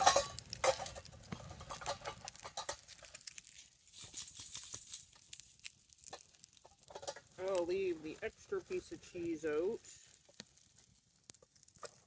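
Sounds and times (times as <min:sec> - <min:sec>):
camp gear rustling and clicking: 0:00.0 - 0:03.2, 0:03.9 - 0:05.3, 0:06.6 - 0:07.6.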